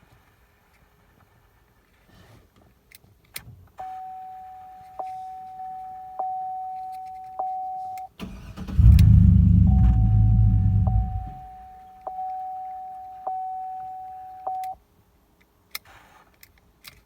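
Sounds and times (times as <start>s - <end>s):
dashboard warning chime: 3.8s - 8.1s, 9.6s - 14.8s
car engine cranking and starting: 8.2s - 11.5s.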